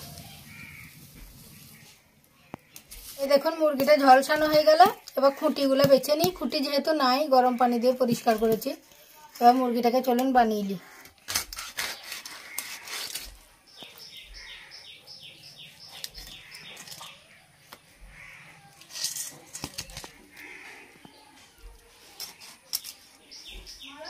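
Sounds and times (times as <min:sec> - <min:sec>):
small bird chirping: 0:11.9 - 0:24.0.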